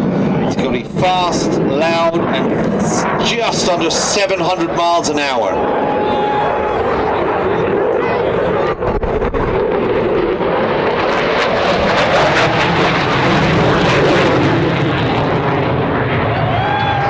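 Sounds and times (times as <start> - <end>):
jet roar: 0.0 - 17.0.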